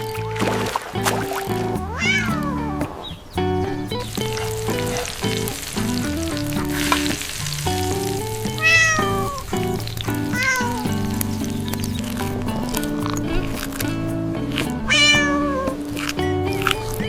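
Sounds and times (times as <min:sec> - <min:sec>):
cat meowing: 0:01.9 - 0:02.9, 0:08.6 - 0:09.4, 0:14.9 - 0:15.6.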